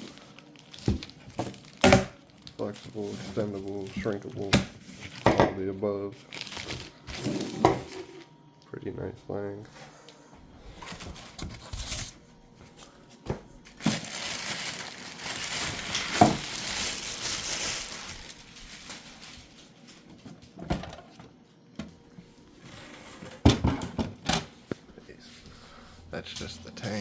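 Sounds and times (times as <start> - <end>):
packaging crinkling and rustling: 0.0 - 5.4, 6.2 - 8.3, 10.7 - 13.0, 13.6 - 20.5.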